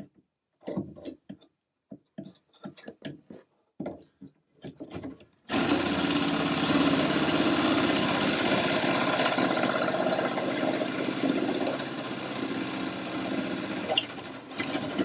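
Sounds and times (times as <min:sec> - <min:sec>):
electric drill drilling into metal: 0:05.5 - 0:15.0.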